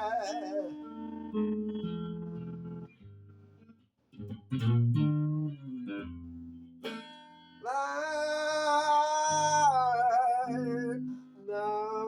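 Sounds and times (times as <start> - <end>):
person singing: 0.0 - 1.4, 7.6 - 12.0
guitar picked notes: 0.0 - 12.0.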